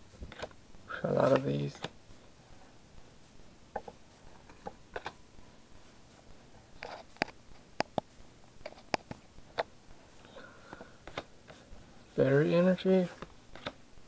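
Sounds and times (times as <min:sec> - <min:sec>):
trading cards flicking: 0:13.2 - 0:13.8.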